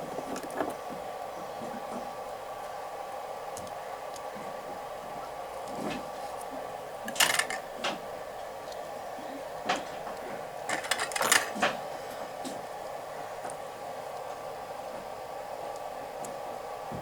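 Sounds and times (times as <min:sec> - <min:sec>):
steady background hum: 0:00.0 - 0:17.0
hands handling wiring: 0:07.1 - 0:08.0, 0:10.7 - 0:11.8.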